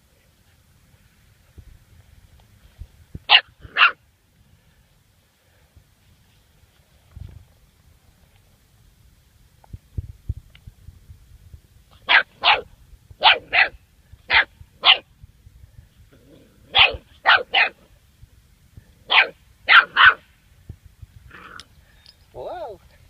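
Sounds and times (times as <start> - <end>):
puppy yapping: 3.3 - 4.0, 12.1 - 12.6, 13.2 - 15.0, 16.7 - 17.8, 19.1 - 20.2.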